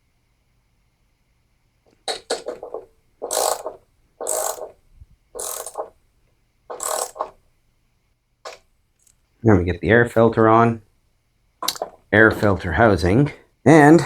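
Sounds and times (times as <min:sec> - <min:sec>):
ratchet wrench clicking: 0:02.1 - 0:04.8, 0:05.4 - 0:05.9, 0:06.7 - 0:07.4.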